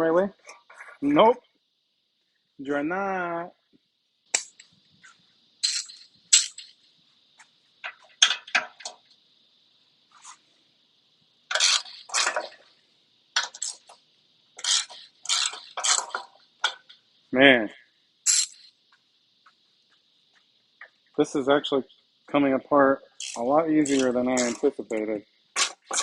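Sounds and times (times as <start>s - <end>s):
metal tools clinking and knocking: 23.2s - 24.7s.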